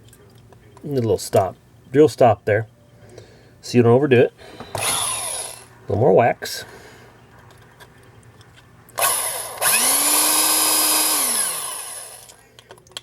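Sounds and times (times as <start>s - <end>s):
electric drill spinning: 4.8s - 5.7s, 9.0s - 12.4s.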